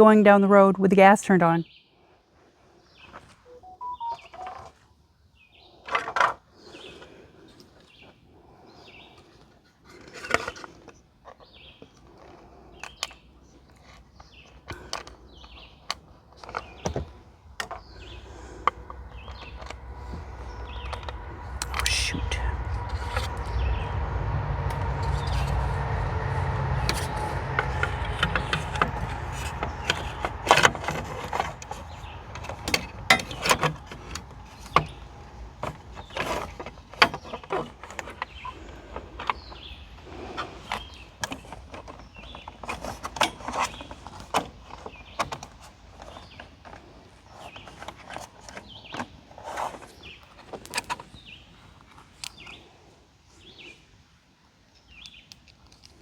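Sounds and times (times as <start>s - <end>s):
steady hum: 17.3s - 37.1s.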